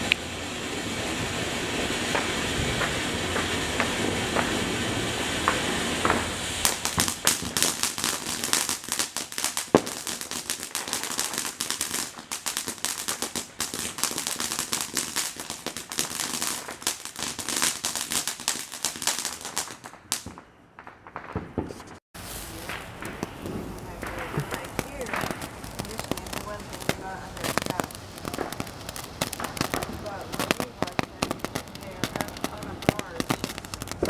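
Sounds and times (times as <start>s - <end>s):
steady hiss: 0.0s - 18.9s, 22.2s - 34.0s
firecrackers popping: 0.0s - 34.0s.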